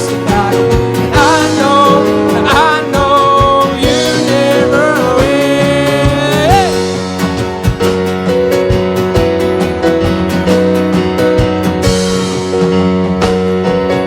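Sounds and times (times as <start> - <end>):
person singing with vibrato: 0.0 - 7.2
steady drum beat: 0.0 - 14.0
sustained band chords: 0.0 - 14.0.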